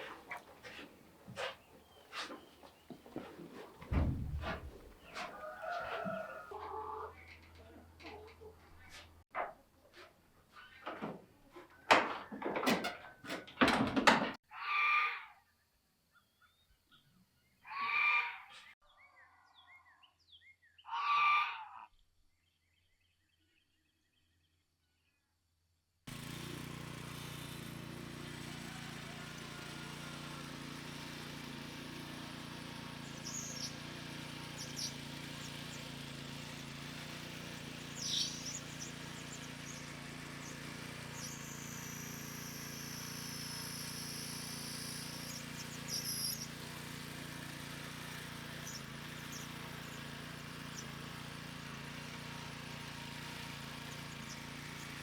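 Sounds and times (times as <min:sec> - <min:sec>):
birds chirping: 0:00.0 - 0:03.7, 0:28.3 - 0:55.0.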